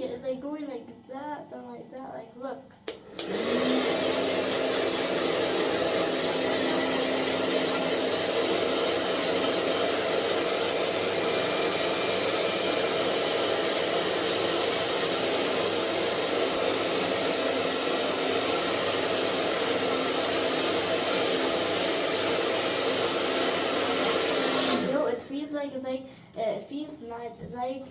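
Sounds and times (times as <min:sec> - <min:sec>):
faint motor hum: 0:00.0 - 0:14.6
hair dryer blowing air: 0:02.9 - 0:25.3.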